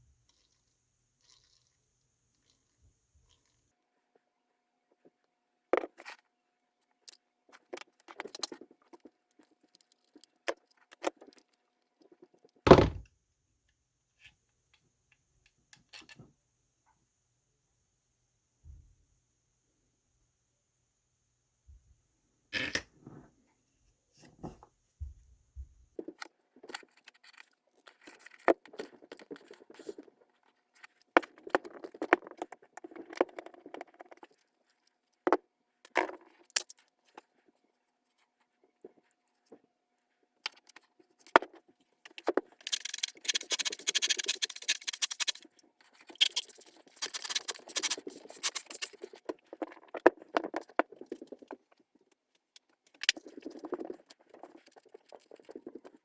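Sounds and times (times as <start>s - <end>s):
clicks and knocks of small parts: 7.0s - 12.6s, 26.0s - 37.2s, 40.4s - 56.0s
scraping and rattling: 42.2s - 51.6s.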